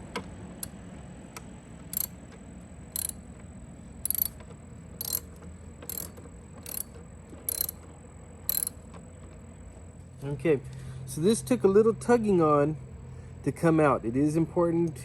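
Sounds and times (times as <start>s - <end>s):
hand ratchet clicking: 1.9s - 2.1s, 3.0s - 3.2s, 4.0s - 4.4s, 5.0s - 6.9s, 7.5s - 7.8s, 8.5s - 8.8s.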